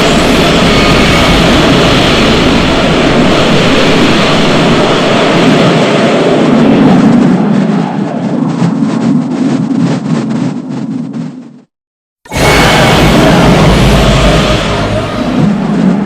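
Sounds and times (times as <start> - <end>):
loud mechanical rumble: 0.0 - 7.2, 12.3 - 16.0.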